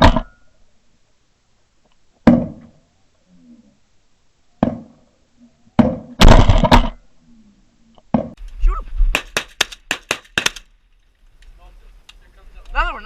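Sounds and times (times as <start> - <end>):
shotgun blasts echoing: 5.8 - 7.0, 9.1 - 10.7.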